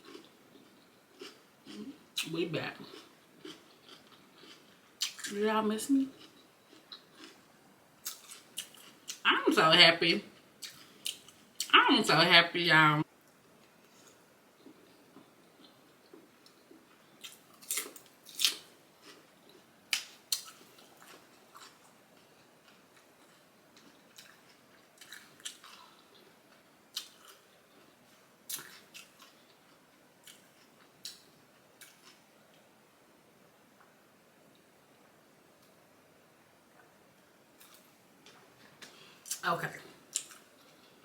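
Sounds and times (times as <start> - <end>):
person chewing crunchy food: 0.0 - 5.3, 6.1 - 9.2, 13.8 - 31.2, 31.8 - 32.6.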